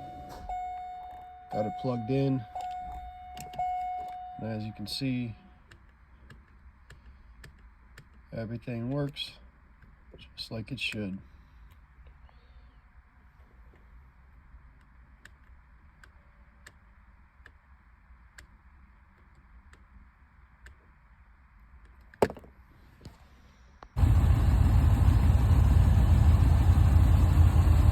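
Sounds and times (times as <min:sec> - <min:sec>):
car engine starting and running: 0:24.0 - 0:27.9.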